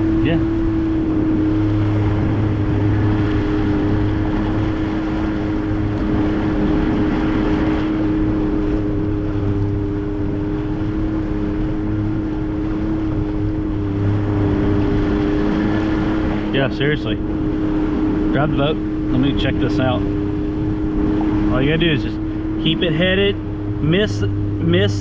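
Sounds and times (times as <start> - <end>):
outboard motor running: 0.0 - 25.0
wind and water hiss: 0.0 - 25.0.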